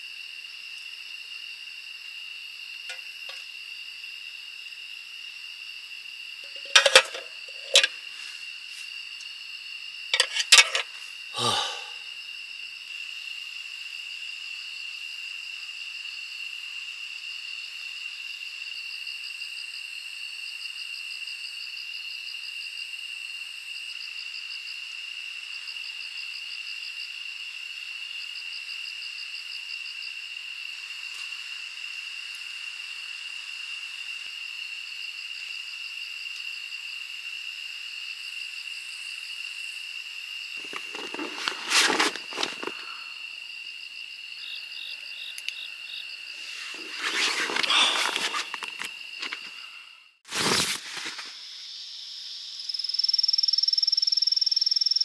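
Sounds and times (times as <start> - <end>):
insects chirping in chorus: 0.0 - 50.2, 50.8 - 55.0.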